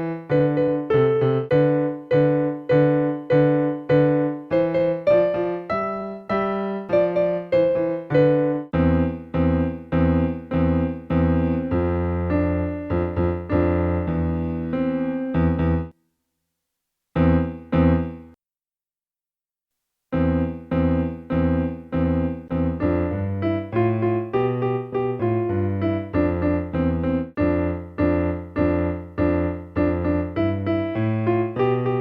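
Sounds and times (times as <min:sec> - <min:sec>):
electronic keyboard notes and chords: 0:00.0 - 0:16.0.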